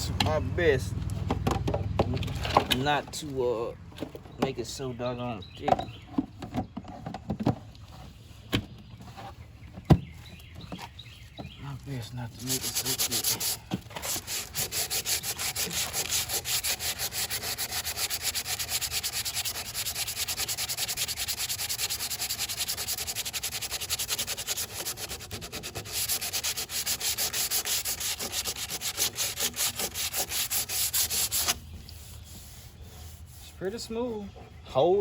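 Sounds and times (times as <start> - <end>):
sandpaper rubbing on filler: 12.1 - 35.0.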